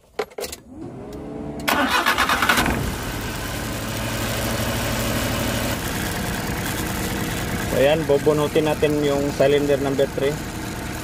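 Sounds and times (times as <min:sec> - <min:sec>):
starter cranking engine: 0:01.7 - 0:03.0
engine idling with misfire: 0:01.7 - 0:11.0.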